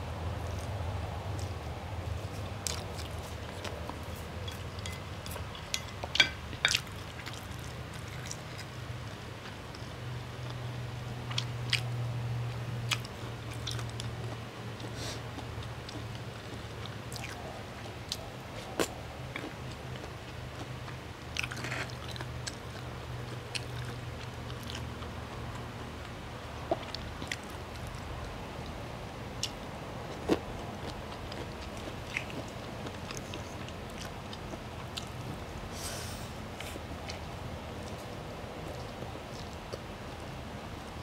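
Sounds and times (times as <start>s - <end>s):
person chewing: 0.4s - 8.8s, 12.9s - 17.5s, 30.2s - 35.4s.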